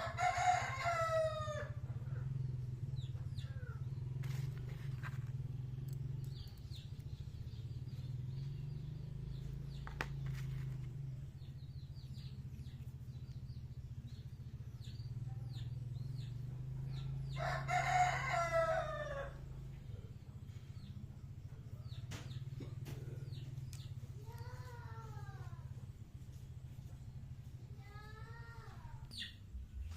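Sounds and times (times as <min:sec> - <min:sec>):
rooster crowing: 0:00.0 - 0:01.8, 0:17.4 - 0:19.5
steady low hum: 0:00.0 - 0:29.9.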